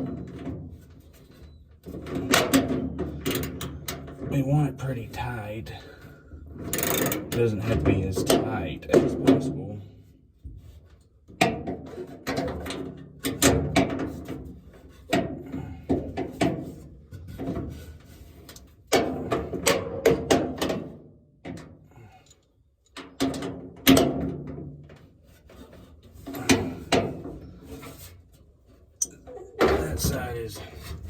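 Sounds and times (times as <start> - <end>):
wrench clanks and knocks: 6.6 - 9.5.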